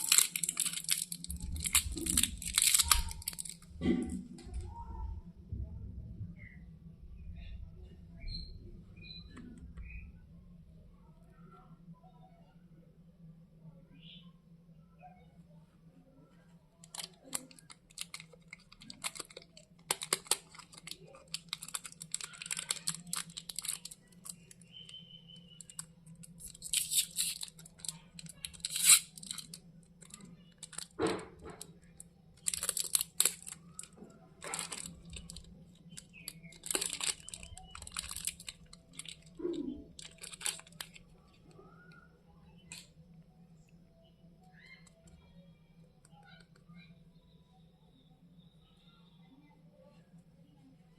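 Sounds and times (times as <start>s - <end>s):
chocolate wrappers crinkling: 0.0s - 4.6s, 16.8s - 42.0s
steady low hum: 0.0s - 50.9s.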